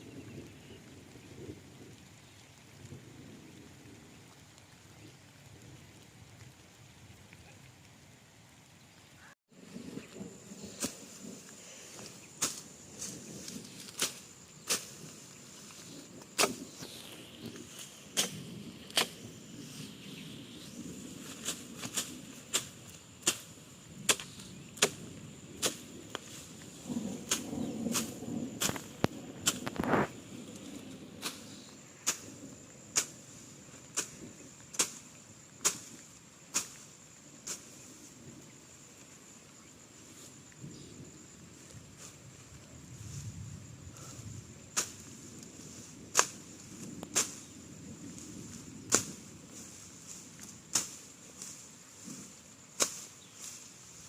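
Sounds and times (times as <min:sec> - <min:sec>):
high insect whine: 0:09.2 - 0:54.0
blade slicing grass: 0:11.9 - 0:19.2, 0:21.2 - 0:25.0, 0:25.6 - 0:26.5, 0:27.2 - 0:30.1, 0:32.9 - 0:37.8, 0:44.8 - 0:47.5, 0:48.9 - 0:53.7.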